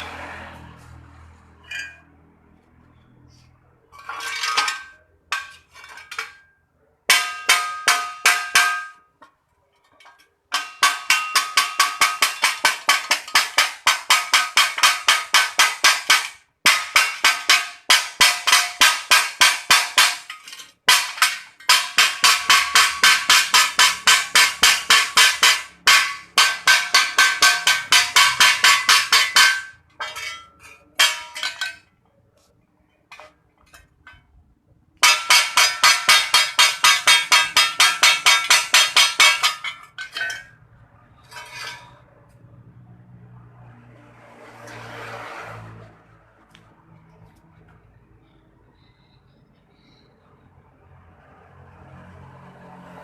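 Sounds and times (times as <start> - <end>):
metal struck rapidly: 10.6 - 30.3, 35.0 - 40.5.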